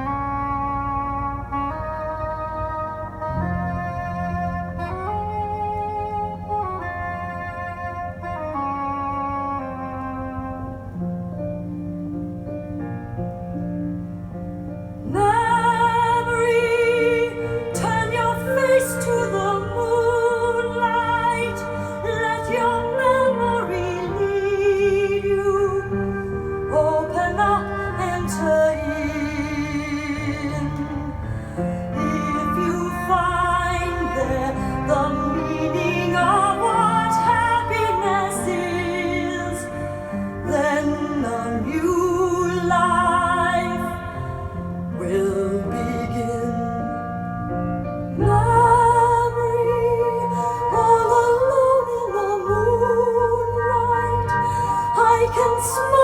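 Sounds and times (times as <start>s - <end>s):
soft instrumental music: 0.0s - 56.0s
woman singing operatically: 15.0s - 47.4s, 48.1s - 56.0s.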